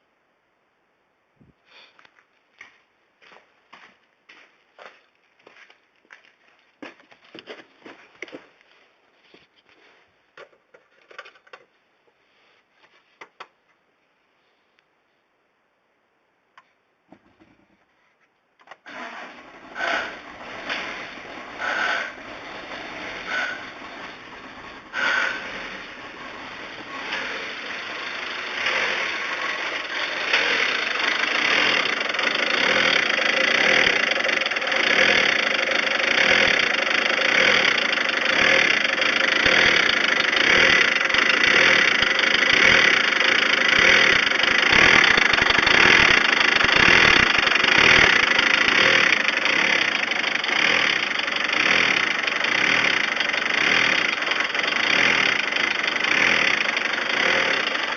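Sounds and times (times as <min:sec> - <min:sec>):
diesel engine idling unevenly: 0:19.2 - 0:57.9.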